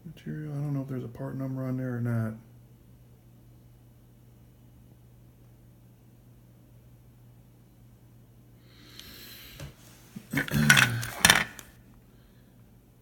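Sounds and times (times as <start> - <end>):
small parts clattering together: 10.2 - 11.8.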